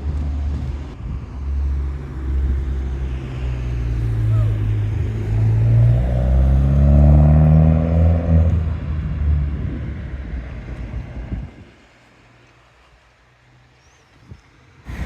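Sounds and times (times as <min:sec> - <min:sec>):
vehicle engine pulling away: 0:00.0 - 0:11.2.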